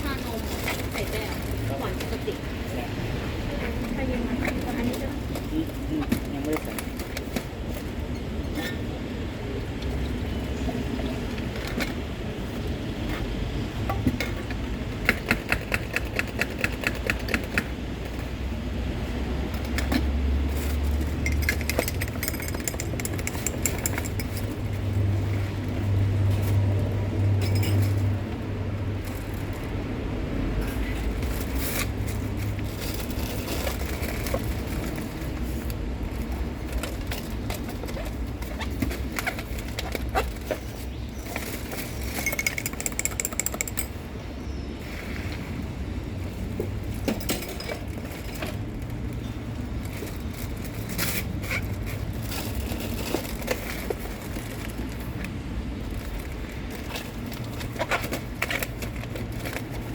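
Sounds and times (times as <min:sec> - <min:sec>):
traffic rumble: 0:00.0 - 0:59.9
vehicles passing: 0:00.0 - 0:59.9
clinks and clicks of drink-making: 0:21.0 - 0:24.7, 0:27.4 - 0:28.1, 0:42.0 - 0:44.0.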